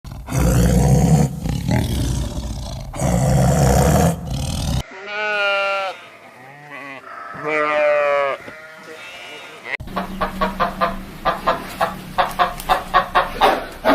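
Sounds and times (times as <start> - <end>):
big cat roaring: 0.1 - 4.8
wavering bleats: 3.0 - 9.8.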